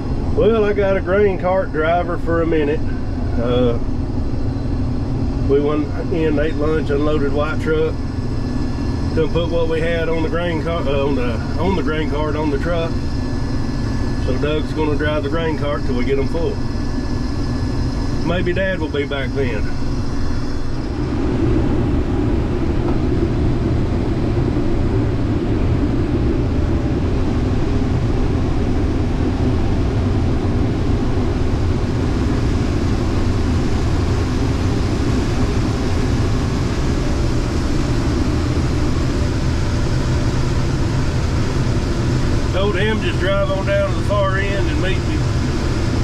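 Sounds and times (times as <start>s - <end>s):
combine harvester droning: 0.0s - 46.0s.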